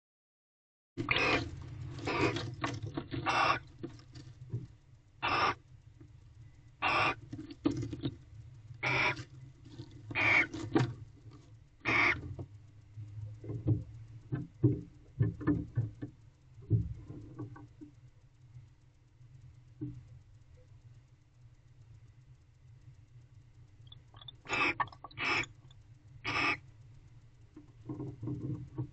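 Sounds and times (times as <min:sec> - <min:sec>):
barn owl harsh calls: 0:01.0 - 0:02.5, 0:03.1 - 0:03.7, 0:05.2 - 0:05.6, 0:06.8 - 0:07.2, 0:08.8 - 0:09.3, 0:10.1 - 0:10.6, 0:11.8 - 0:12.3, 0:23.9 - 0:25.6, 0:26.2 - 0:26.6
soft scratching and tapping: 0:01.4 - 0:04.8, 0:07.2 - 0:11.6, 0:12.2 - 0:18.1, 0:27.4 - 0:28.9.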